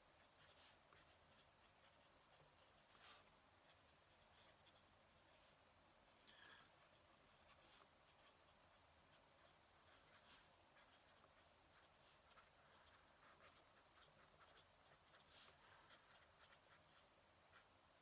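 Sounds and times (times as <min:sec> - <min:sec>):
pen scratching on paper: 0:00.0 - 0:05.6, 0:06.4 - 0:17.8.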